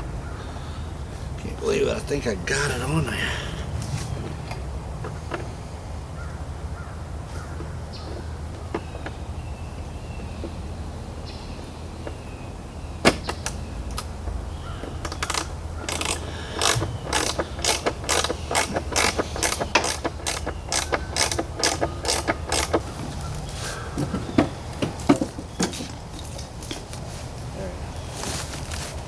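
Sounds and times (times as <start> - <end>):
ratchet wrench clicking: 15.1 - 22.9.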